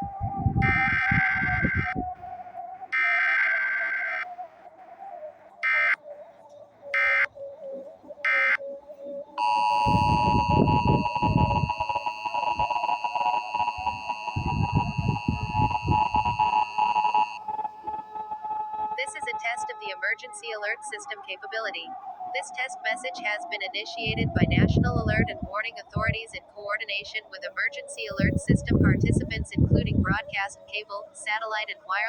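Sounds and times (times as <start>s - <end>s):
buzzy digital header bursts: 0.6s - 2.0s, 9.4s - 17.4s
steady two-tone attention signal: 0.6s - 2.0s, 7.0s - 7.3s, 9.4s - 17.4s.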